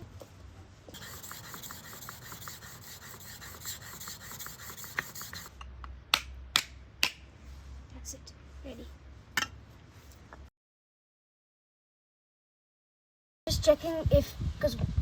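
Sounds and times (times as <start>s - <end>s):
blade scraping on sharpening stone: 1.0s - 5.5s.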